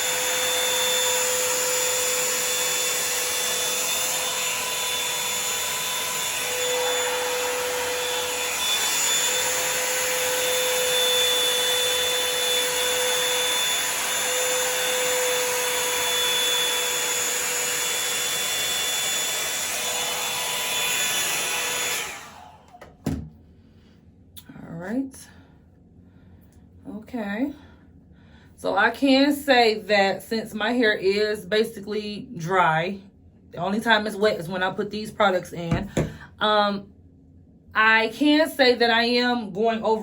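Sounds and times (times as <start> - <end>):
hot-air brush running: 0.0 - 23.2, 35.6 - 36.2.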